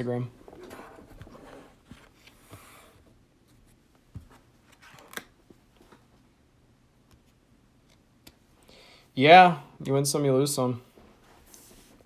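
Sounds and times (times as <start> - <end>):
soft rustle: 10.8 - 12.0.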